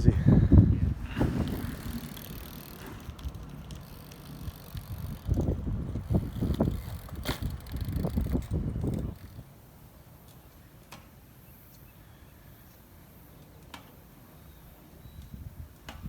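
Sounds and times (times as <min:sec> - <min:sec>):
bike knocking and rattling: 0:00.0 - 0:09.6
bike tyres rolling over rough ground: 0:00.0 - 0:11.0.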